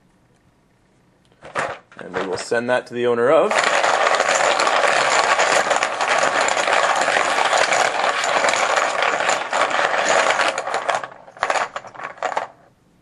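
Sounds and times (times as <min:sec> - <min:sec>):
poker chips clattering: 0:03.5 - 0:12.6.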